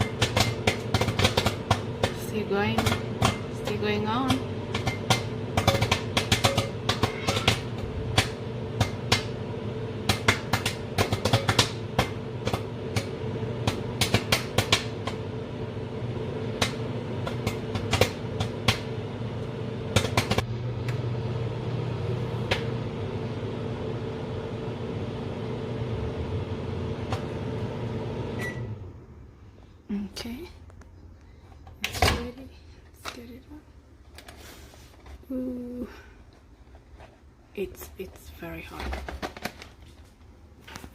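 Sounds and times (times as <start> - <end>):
popcorn popping: 0.0 - 21.1
microwave oven hum: 0.0 - 31.2
microwave beep: 27.8 - 28.9.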